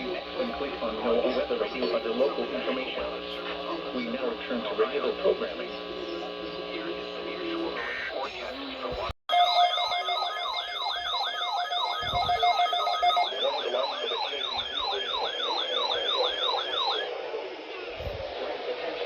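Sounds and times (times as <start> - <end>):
radio static hiss: 0.0 - 9.2
sirens wailing: 9.3 - 17.1.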